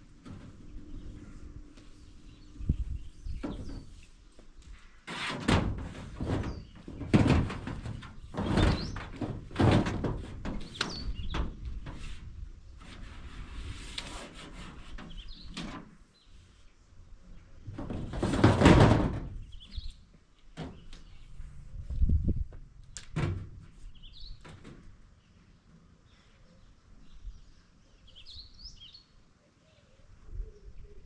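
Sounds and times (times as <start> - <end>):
knocks thuds and scrapes: 2.7 - 4.5, 5.1 - 16.0, 17.6 - 19.6, 20.6 - 21.2.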